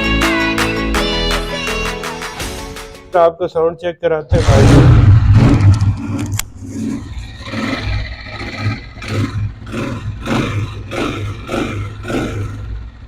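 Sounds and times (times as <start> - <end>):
motorcycle engine pulsing: 4.4 - 13.0.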